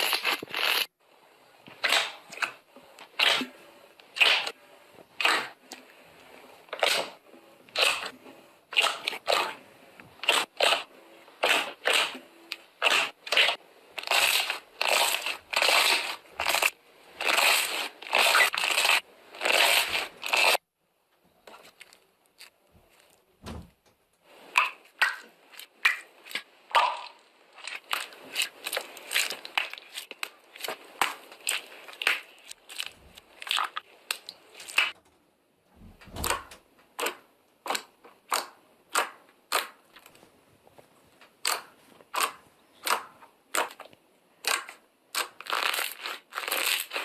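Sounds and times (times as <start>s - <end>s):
low thump: 23.4s - 23.9s.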